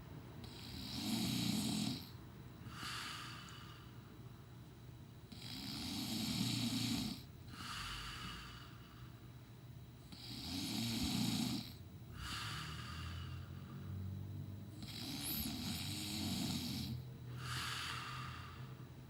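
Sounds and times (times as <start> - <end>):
man snoring: 0.4 - 3.9, 5.3 - 9.0, 10.1 - 14.0, 14.7 - 18.8
soft breathing: 2.0 - 4.2, 6.8 - 9.4, 11.5 - 19.0.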